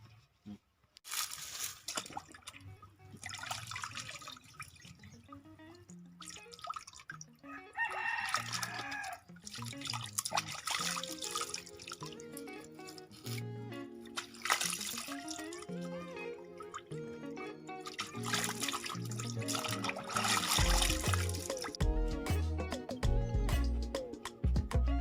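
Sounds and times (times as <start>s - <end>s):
rooster crowing: 7.4s - 9.2s
background music: 10.5s - 25.0s.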